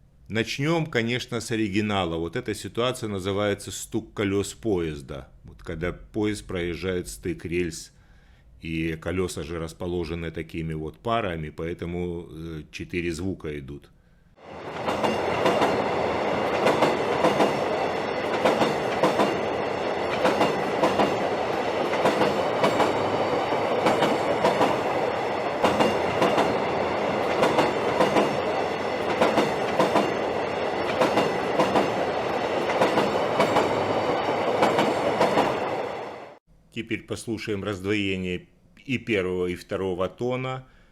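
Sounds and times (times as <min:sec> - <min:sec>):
train wheels clattering over rail joints: 0:14.6 - 0:35.8.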